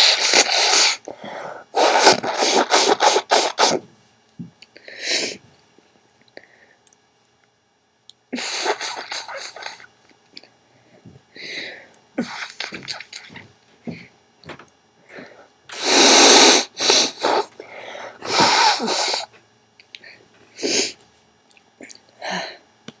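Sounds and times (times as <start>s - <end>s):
woman blowing her nose: 0.0s - 1.1s, 1.7s - 3.9s, 8.4s - 9.9s, 15.7s - 17.6s, 18.2s - 19.3s.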